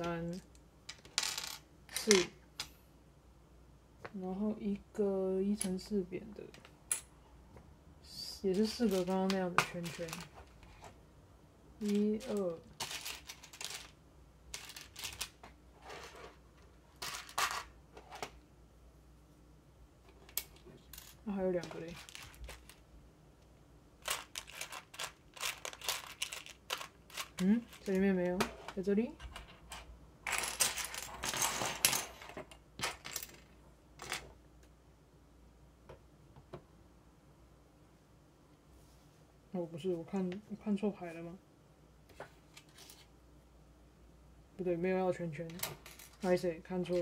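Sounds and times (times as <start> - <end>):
plastic toy bricks clicking and rattling: 8.6 - 10.4, 11.8 - 13.9, 14.6 - 15.4, 20.3 - 22.8, 24.0 - 28.0
plastic pieces clattering: 8.6 - 10.6, 11.8 - 16.2, 16.9 - 17.7, 20.3 - 22.8, 24.0 - 28.0.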